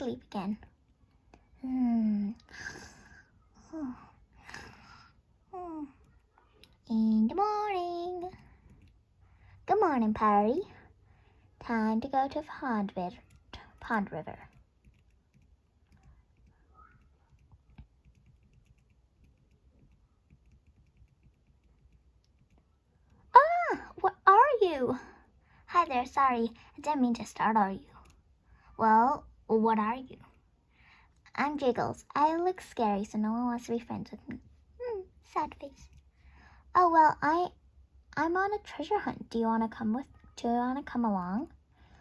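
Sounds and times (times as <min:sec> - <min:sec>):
child's breathy vocal noises: 0:02.5 - 0:06.0
faint clicks: 0:08.1 - 0:09.1, 0:13.1 - 0:23.3.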